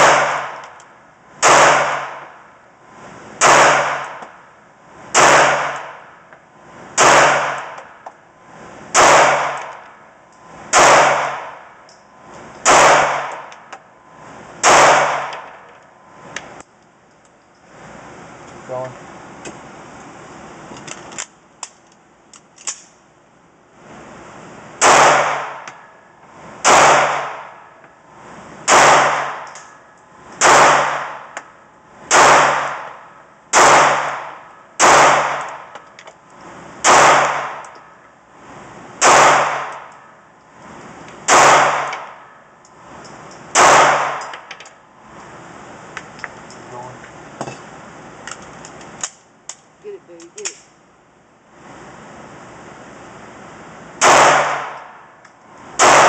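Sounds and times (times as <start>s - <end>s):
handgun shots echoing: 54.0s - 55.0s.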